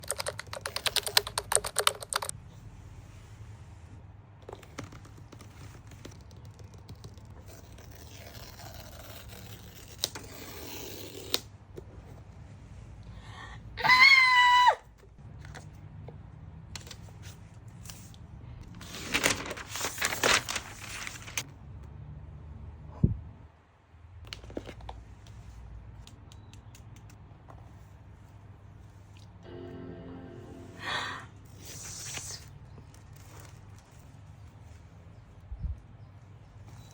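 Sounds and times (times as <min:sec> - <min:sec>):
packaging tearing and crinkling: 0:18.9 - 0:21.4.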